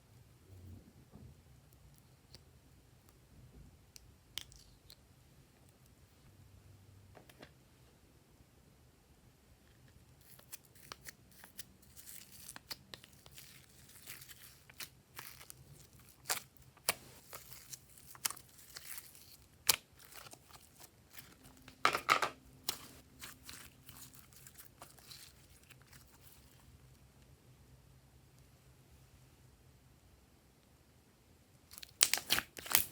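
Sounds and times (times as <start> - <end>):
slime clicking and crackling: 10.2 - 21.8, 31.7 - 32.9.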